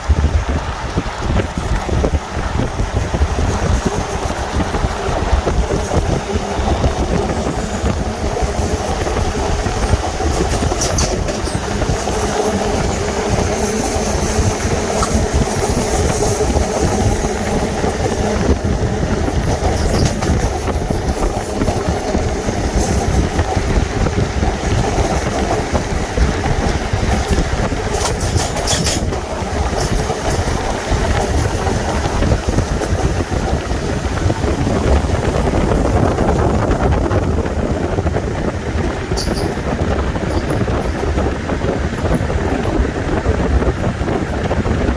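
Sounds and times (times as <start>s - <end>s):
train wheels rumbling on rail: 0.0s - 44.9s
wind gusts on microphone: 0.0s - 44.9s.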